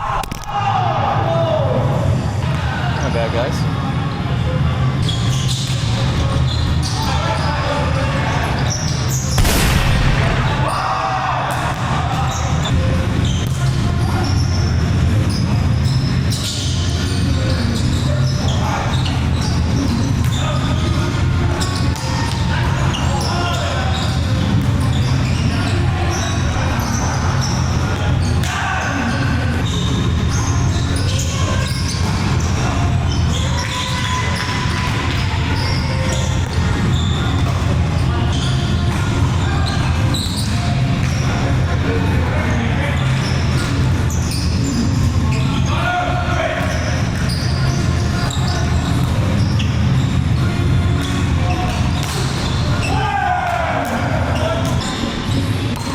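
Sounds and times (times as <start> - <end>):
sneakers squeaking on gym floor: 4.9 - 41.5, 42.5 - 45.8, 46.4 - 55.9
low rumble of hall: 9.2 - 16.0
loud noisy burst: 9.4 - 11.5
volleyball being struck: 9.4 - 12.0.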